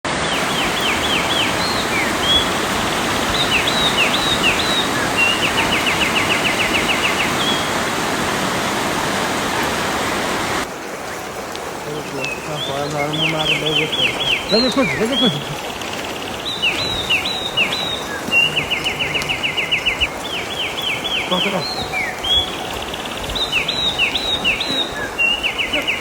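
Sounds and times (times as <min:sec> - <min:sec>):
flowing water rushing: 0:00.0 - 0:26.0
bird calling and trilling: 0:00.2 - 0:08.1, 0:11.9 - 0:26.0.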